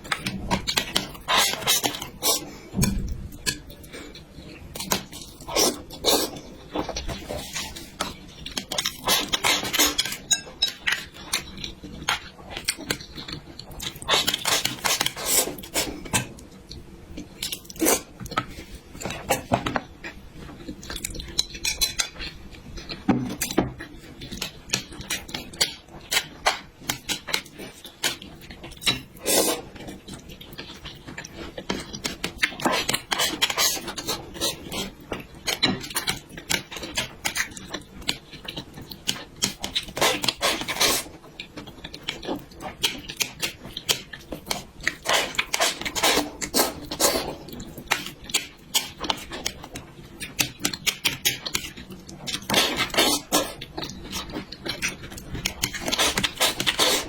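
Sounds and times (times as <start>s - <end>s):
utensils clinking on dishes: 9.4s - 11.0s.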